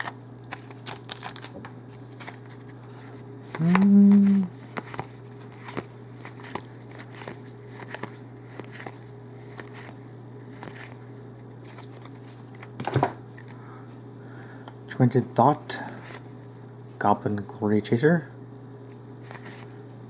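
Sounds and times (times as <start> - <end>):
cards clicking and rustling: 0.0 - 13.6, 19.2 - 19.8
low electrical hum: 0.0 - 20.0.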